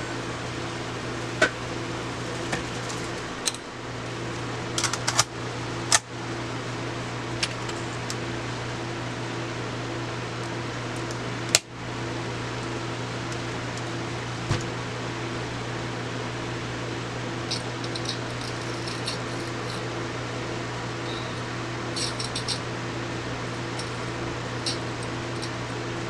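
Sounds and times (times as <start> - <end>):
steady hum: 0.0 - 26.0
tape mechanism clicks and clunks: 4.7 - 5.3.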